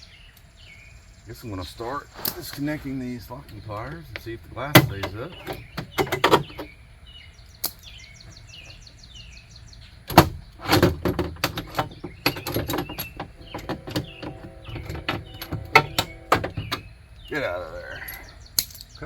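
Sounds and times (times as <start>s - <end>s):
bird chirping: 0.0s - 19.0s
metal clanking and rattling: 4.4s - 6.7s, 10.1s - 16.8s.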